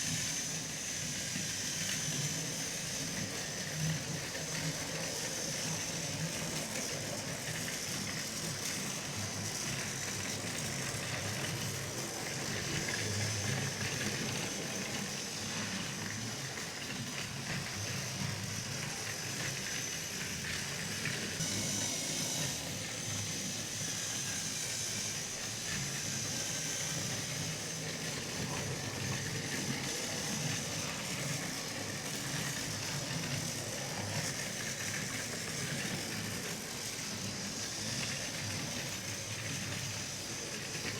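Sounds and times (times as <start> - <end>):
toy train motor whine: 0.0 - 40.9
toy wheels rattling on track: 0.0 - 40.9.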